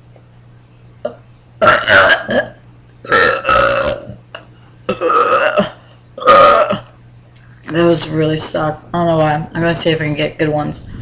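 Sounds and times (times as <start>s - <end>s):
girl burping: 1.1s - 4.2s, 4.9s - 7.0s.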